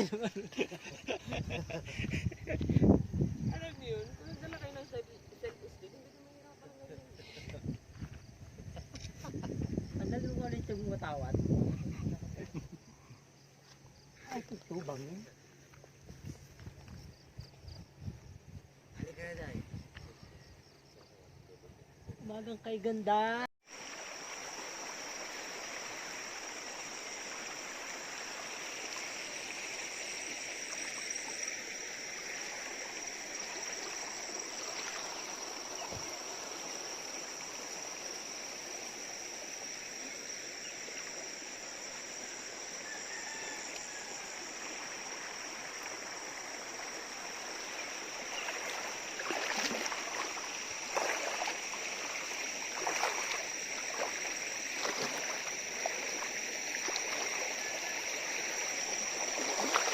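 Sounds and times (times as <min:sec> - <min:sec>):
high-pitched insect trill: 0:00.0 - 0:59.9
flowing stream water: 0:23.6 - 0:59.9.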